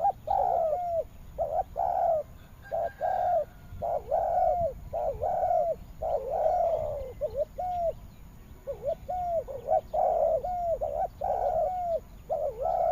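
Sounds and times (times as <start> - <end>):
dove cooing: 0.0 - 8.0, 8.6 - 12.9.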